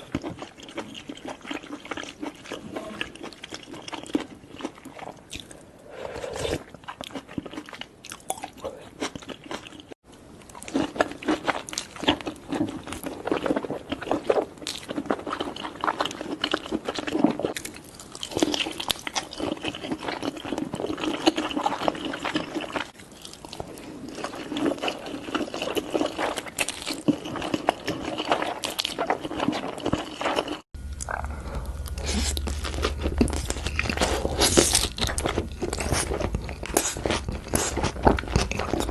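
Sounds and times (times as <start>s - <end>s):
wet chewing and crunching: 0.0s - 38.9s
low steady hum: 30.8s - 38.9s.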